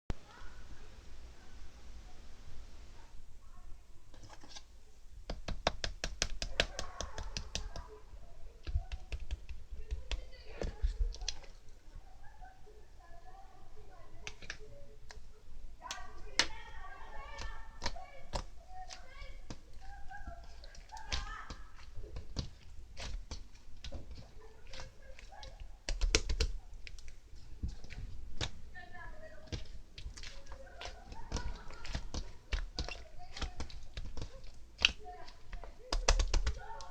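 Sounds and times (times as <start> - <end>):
taps of hands handling objects: 5.3 - 7.9.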